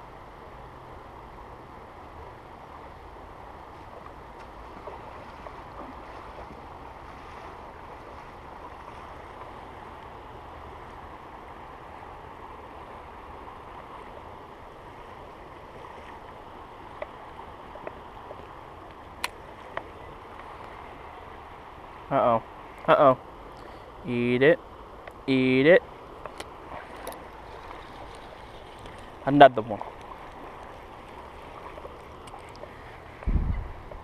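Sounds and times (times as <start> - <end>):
creek water running: 0.0 - 34.0
faint sharp clicks: 18.8 - 20.8, 26.2 - 27.3.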